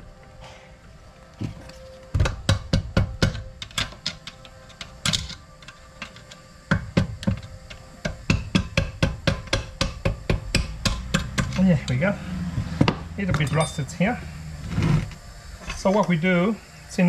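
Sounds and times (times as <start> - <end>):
hammer knocking on metal: 2.2 - 3.4, 8.0 - 11.6.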